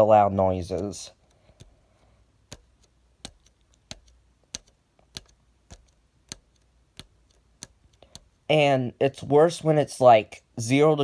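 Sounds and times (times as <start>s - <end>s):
faint sharp clicks: 2.5s - 8.3s.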